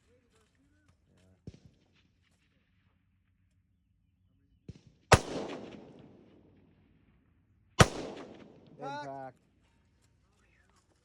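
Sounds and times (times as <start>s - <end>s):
rifle shots: 5.1s - 6.6s, 7.8s - 9.2s.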